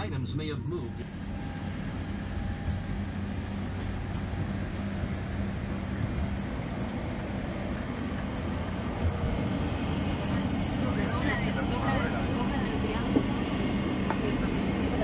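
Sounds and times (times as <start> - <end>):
airliner cabin rumble: 0.0 - 15.0
constant hum: 0.0 - 15.0.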